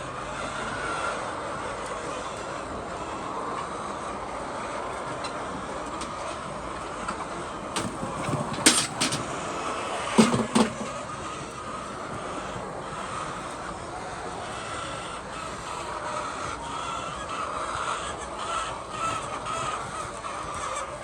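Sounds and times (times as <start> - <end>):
mechanical rumble: 7.8 - 11.2.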